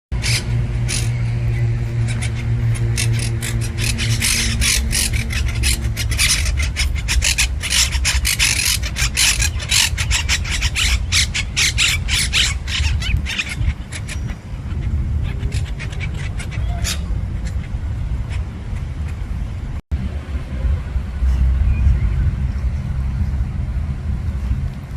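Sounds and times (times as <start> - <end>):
low hum: 0.1 - 24.9
parrots screeching: 0.2 - 18.4.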